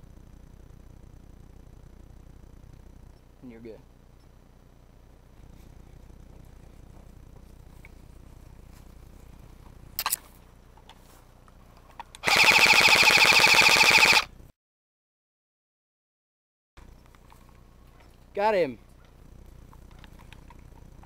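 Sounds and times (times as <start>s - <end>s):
airsoft gun firing bursts: 12.2s - 14.3s.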